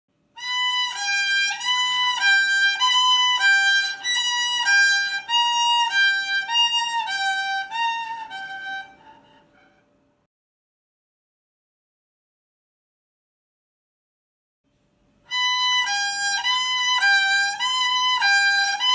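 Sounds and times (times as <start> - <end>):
violin imitating siren: 0.4 - 9.8, 15.3 - 18.9.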